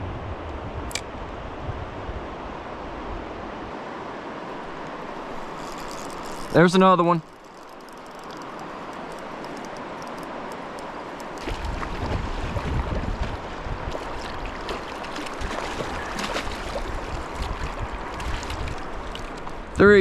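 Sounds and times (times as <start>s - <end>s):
river water rushing: 2.2s - 19.8s
small splashes: 7.3s - 19.6s.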